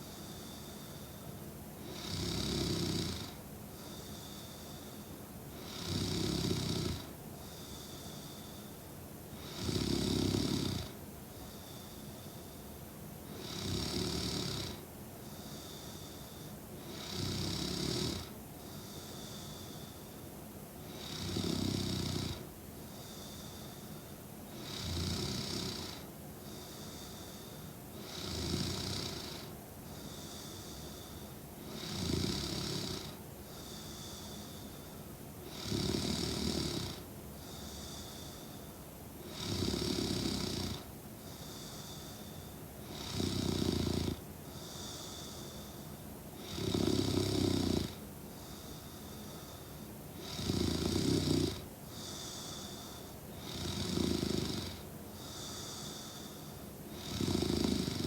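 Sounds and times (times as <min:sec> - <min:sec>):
soft breaths with thin high tone: 0:00.0 - 0:02.0, 0:03.6 - 0:06.1, 0:07.3 - 0:09.6, 0:10.9 - 0:13.4, 0:14.7 - 0:17.1, 0:18.2 - 0:21.0, 0:22.4 - 0:24.7, 0:25.4 - 0:28.3, 0:28.9 - 0:39.6, 0:40.4 - 0:43.3, 0:44.2 - 0:46.7, 0:47.4 - 0:50.5, 0:51.1 - 0:53.7, 0:54.6 - 0:57.2
woman snoring: 0:01.8 - 0:03.4, 0:05.6 - 0:07.1, 0:09.4 - 0:11.0, 0:13.3 - 0:14.8, 0:15.4 - 0:19.8, 0:20.9 - 0:23.7, 0:24.5 - 0:29.5, 0:30.1 - 0:34.7, 0:35.4 - 0:38.5, 0:39.2 - 0:45.8, 0:46.4 - 0:58.0.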